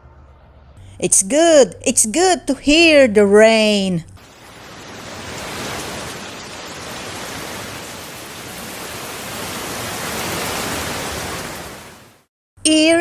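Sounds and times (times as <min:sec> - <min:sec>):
heavy rain falling: 0:04.2 - 0:12.3.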